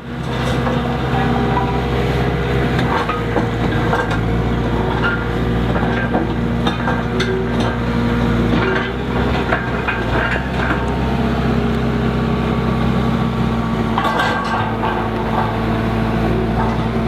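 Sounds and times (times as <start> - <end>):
skid steer engine running: 0.0 - 17.0
bucket clanking and rattling: 2.8 - 7.8, 13.9 - 17.0.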